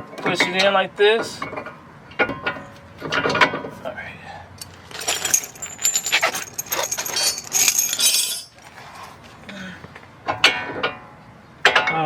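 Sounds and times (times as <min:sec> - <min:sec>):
metal brake parts clinking: 0:04.6 - 0:08.6.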